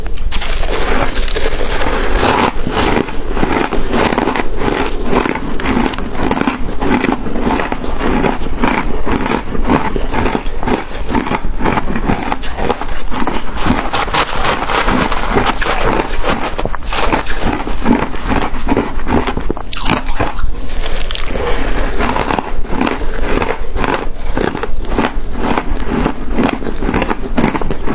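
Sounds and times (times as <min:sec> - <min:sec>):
ice crunching being chewed: 0:00.0 - 0:27.9.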